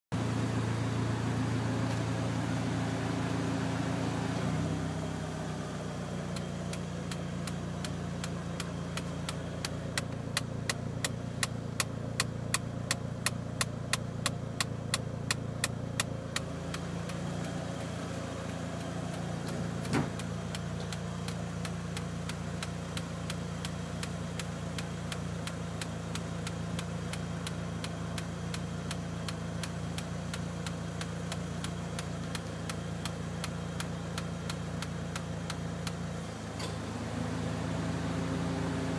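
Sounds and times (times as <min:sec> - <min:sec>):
car engine idling: 0:00.1 - 0:38.9
regular sharp ticking: 0:06.3 - 0:36.1.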